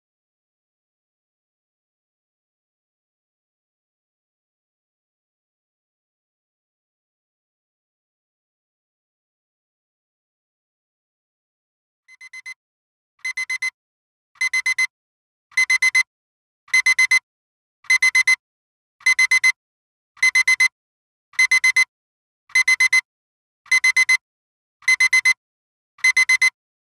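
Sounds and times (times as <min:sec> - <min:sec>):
digital timer alarm beeping: 0:12.1 - 0:12.6, 0:13.2 - 0:13.8, 0:14.4 - 0:14.9, 0:15.5 - 0:16.1, 0:16.7 - 0:17.2, 0:17.9 - 0:18.4, 0:19.0 - 0:19.6, 0:20.2 - 0:20.8, 0:21.4 - 0:21.9, 0:22.5 - 0:23.1, 0:23.7 - 0:24.2, 0:24.8 - 0:25.4, 0:26.0 - 0:26.6.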